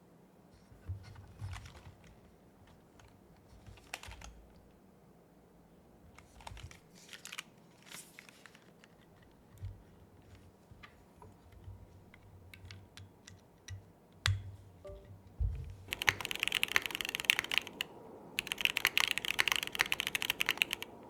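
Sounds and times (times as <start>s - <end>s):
mechanical keyboard typing: 3.6s - 4.4s, 15.8s - 21.0s.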